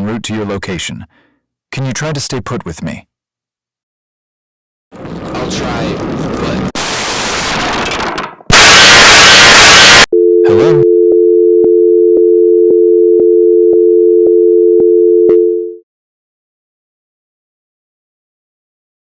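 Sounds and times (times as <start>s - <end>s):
loud static burst: 5.0s - 10.1s
two-note telephone line tone: 9.8s - 15.8s.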